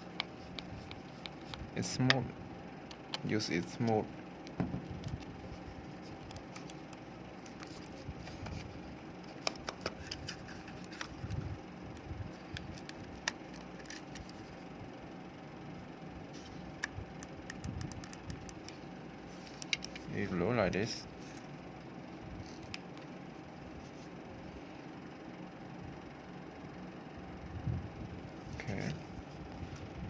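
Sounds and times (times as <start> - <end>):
faint steady hum: 0.0 - 30.0
computer mouse clicks and taps: 16.8 - 18.8, 19.5 - 20.1.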